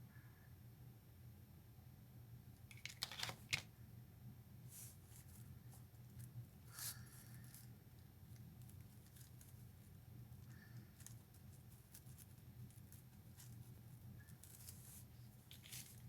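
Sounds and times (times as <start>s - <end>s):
faint steady hum: 0.0s - 16.0s
craft materials clicking and rustling: 2.7s - 3.7s.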